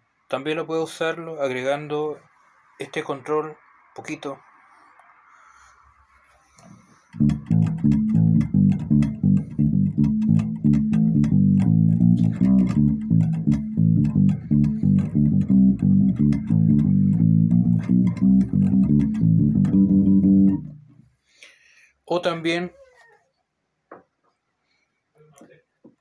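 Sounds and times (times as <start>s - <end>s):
electric bass guitar plucked notes: 7.1s - 21.0s.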